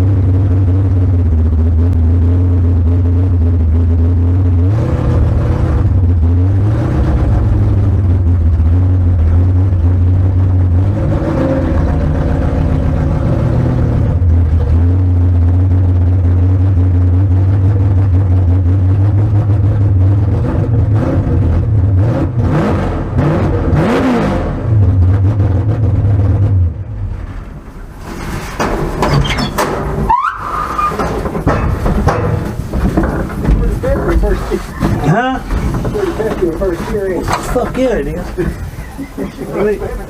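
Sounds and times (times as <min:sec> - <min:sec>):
car engine idling: 0:00.0 - 0:10.9, 0:28.8 - 0:40.0.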